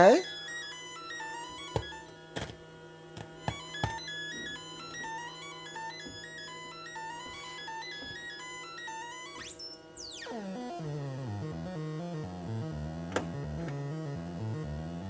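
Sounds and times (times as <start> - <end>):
buzzy synthesizer sequence: 9.4 - 15.0.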